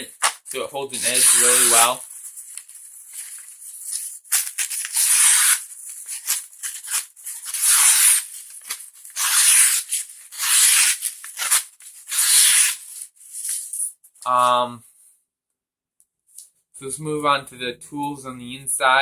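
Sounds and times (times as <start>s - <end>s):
knife blade slicing paper: 1.0s - 2.0s, 3.9s - 13.7s.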